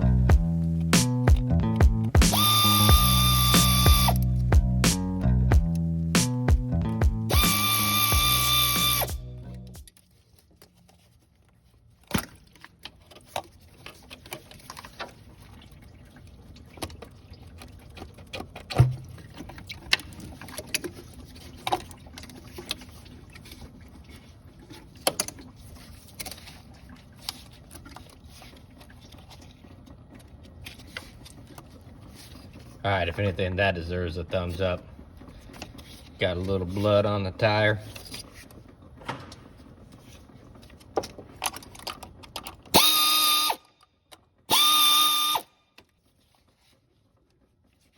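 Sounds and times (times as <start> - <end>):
background music: 0.0 - 9.9.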